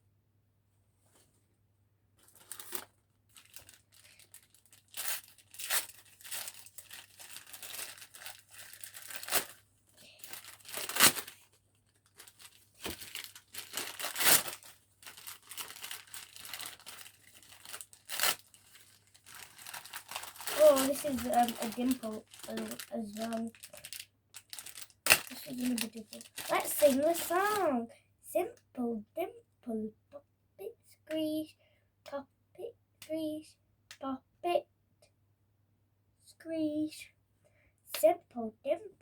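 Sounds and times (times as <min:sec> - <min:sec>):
packaging tearing and crumpling: 0:02.2 - 0:09.6, 0:10.2 - 0:27.6.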